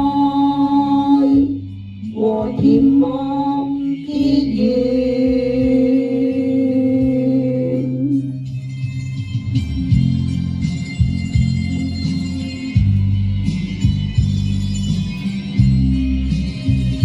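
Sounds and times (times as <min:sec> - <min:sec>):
person singing long notes: 0:00.0 - 0:08.4
instrumental backing music: 0:00.0 - 0:17.0.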